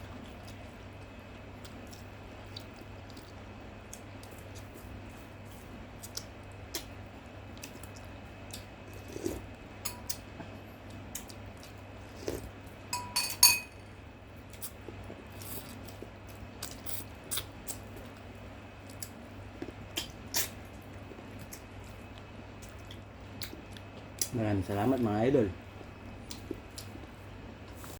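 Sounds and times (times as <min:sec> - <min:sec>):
steady low hum: 0:00.0 - 0:27.9
utensil clinking against dish: 0:13.0 - 0:13.8.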